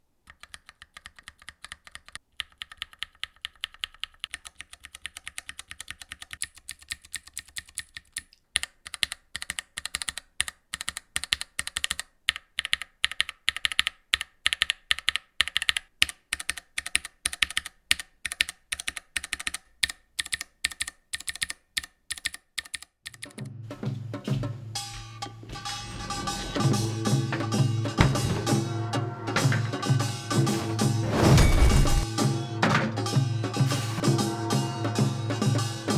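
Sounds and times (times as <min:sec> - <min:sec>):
mechanical keyboard typing: 0:00.3 - 0:23.4
music: 0:23.2 - 0:35.9.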